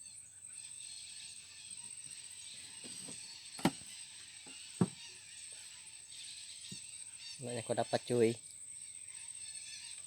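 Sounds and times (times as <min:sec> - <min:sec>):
insect buzzing: 0:00.0 - 0:10.0.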